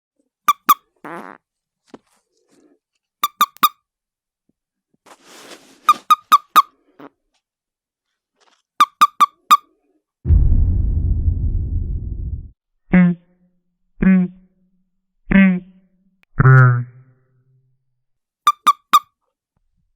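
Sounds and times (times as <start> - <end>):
toad squeaking chirps: 3.2 - 3.7, 5.9 - 6.7, 8.8 - 9.6, 18.5 - 19.0.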